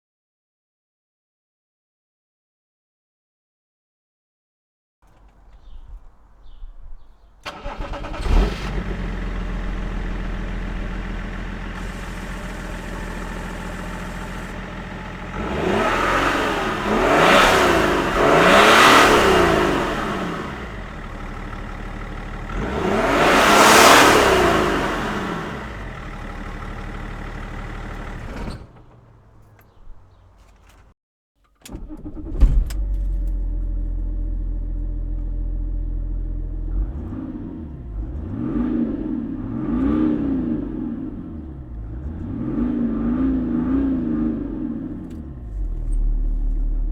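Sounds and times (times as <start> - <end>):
diesel engine starting: 7.2 - 30.9, 31.6 - 46.9
diesel engine idling: 7.4 - 30.4
diesel engine revving: 7.4 - 30.4, 31.7 - 46.9.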